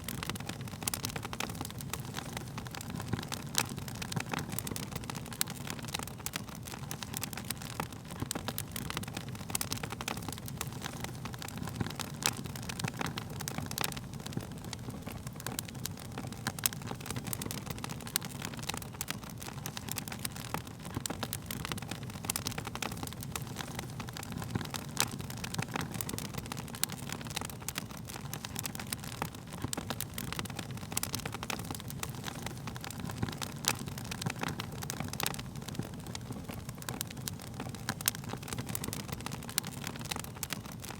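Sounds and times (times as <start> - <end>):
low rumble of flames: 0.0 - 40.9
wood fire crackling and popping: 0.0 - 40.9.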